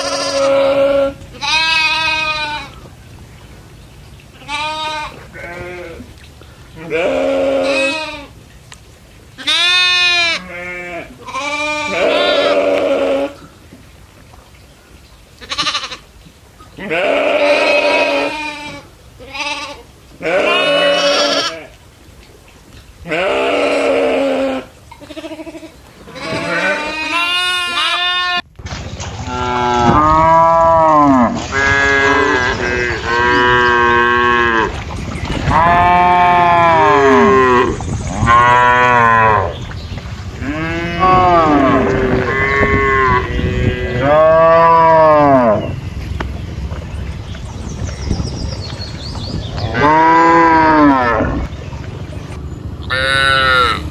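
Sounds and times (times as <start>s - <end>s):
goats bleating: 0.0s - 2.8s, 4.4s - 6.1s, 6.8s - 8.3s, 9.4s - 13.4s, 15.4s - 16.1s, 16.8s - 21.7s, 23.1s - 28.4s, 52.8s - 53.9s
cattle mooing: 29.3s - 34.8s, 35.4s - 39.6s, 40.4s - 45.8s, 49.6s - 51.6s, 52.8s - 53.9s.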